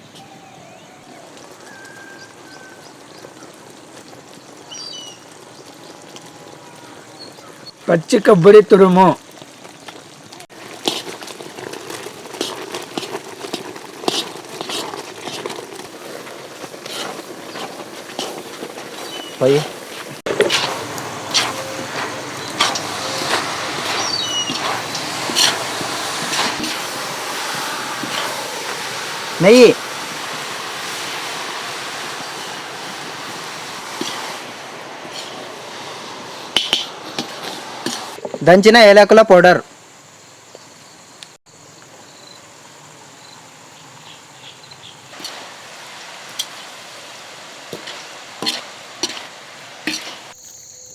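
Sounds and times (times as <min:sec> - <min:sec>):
utensil knocking and scraping pan: 0:10.6 - 0:29.6, 0:32.1 - 0:35.6, 0:36.4 - 0:38.4, 0:46.3 - 0:46.7, 0:47.7 - 0:50.4.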